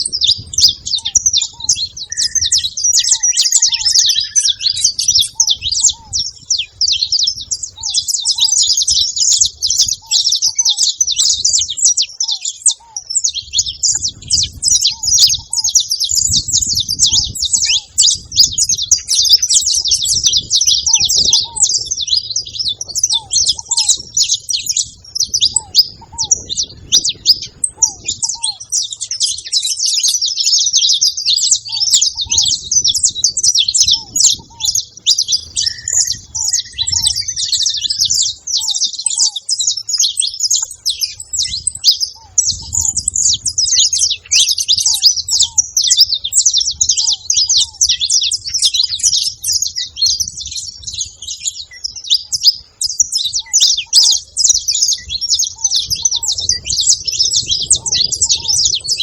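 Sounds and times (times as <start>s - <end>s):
finches chirping and trilling: 0.0s - 59.0s
short lower bird notes: 31.6s - 39.8s.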